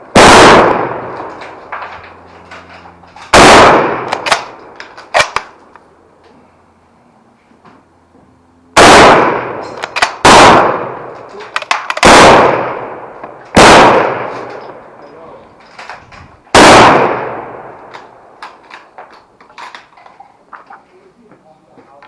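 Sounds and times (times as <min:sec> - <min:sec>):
rifle shots echoing: 0:00.1 - 0:01.4, 0:03.3 - 0:05.5, 0:08.8 - 0:14.8, 0:16.5 - 0:18.3.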